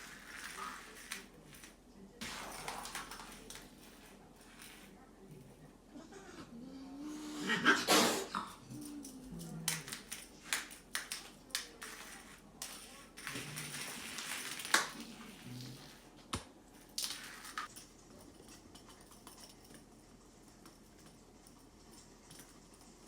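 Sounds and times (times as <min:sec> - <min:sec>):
cats hissing: 0:05.9 - 0:09.9
cat growling: 0:05.9 - 0:10.1.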